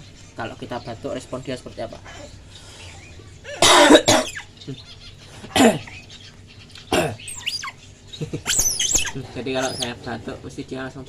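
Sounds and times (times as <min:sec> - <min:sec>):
man coughing: 0:03.5 - 0:04.4, 0:05.4 - 0:05.9, 0:06.9 - 0:07.2.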